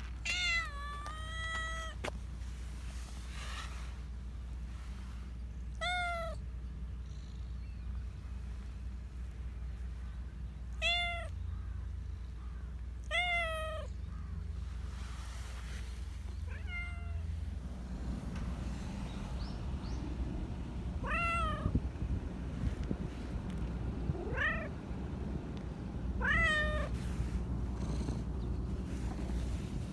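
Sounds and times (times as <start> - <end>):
cat meowing: 0.2 - 2.0, 5.7 - 6.4, 10.7 - 11.4, 13.0 - 14.0, 16.5 - 17.3, 21.0 - 21.8, 24.2 - 24.7, 26.2 - 26.9.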